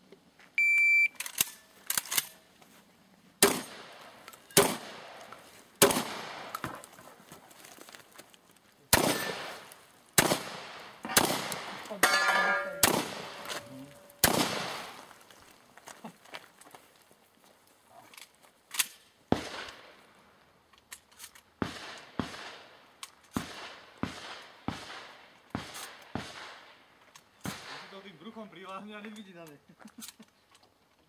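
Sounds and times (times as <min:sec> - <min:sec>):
shotgun shots: 0:03.4 - 0:05.2, 0:05.8 - 0:06.7, 0:08.9 - 0:15.1, 0:19.3 - 0:19.9, 0:21.6 - 0:26.8, 0:27.4 - 0:28.1
steel target clanging: 0:09.0 - 0:09.6, 0:11.8 - 0:14.2.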